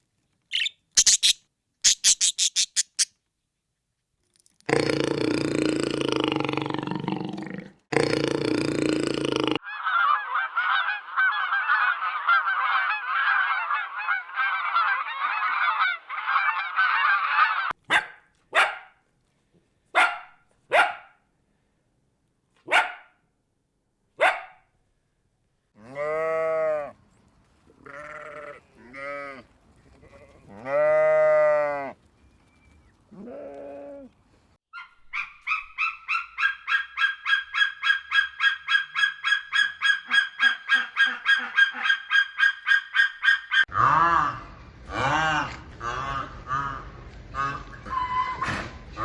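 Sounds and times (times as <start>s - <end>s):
animal chattering: 0.5s - 3.1s
long rising and falling calls: 0.5s - 3.1s
short sharp animal calls: 0.5s - 3.1s.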